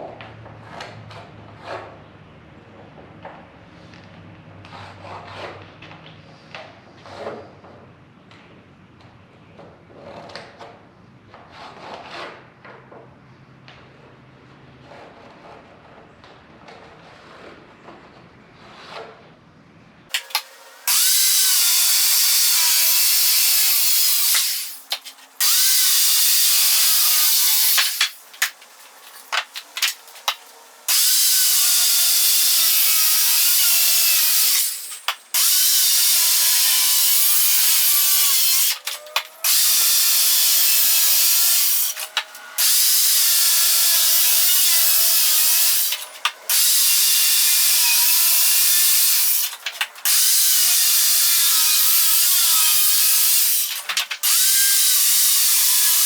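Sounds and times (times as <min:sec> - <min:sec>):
power saw cutting wood: 0:20.1 - 0:56.0.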